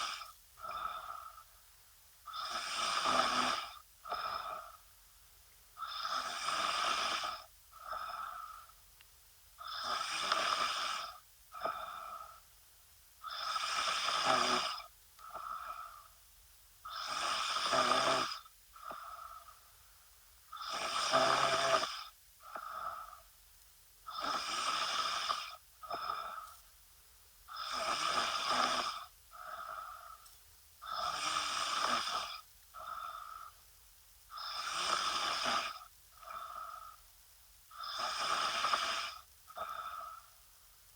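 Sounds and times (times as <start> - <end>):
woman snoring: 0.0 - 1.5, 2.3 - 4.8, 5.8 - 8.8, 9.6 - 12.4, 13.2 - 16.1, 16.9 - 19.6, 20.5 - 23.2, 24.1 - 26.6, 27.5 - 30.2, 30.8 - 33.6, 34.3 - 37.0, 37.7 - 40.3.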